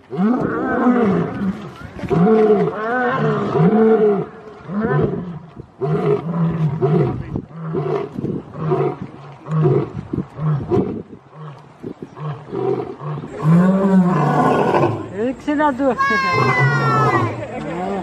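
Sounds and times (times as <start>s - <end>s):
lion roaring: 12.2s - 15.1s, 16.2s - 17.4s.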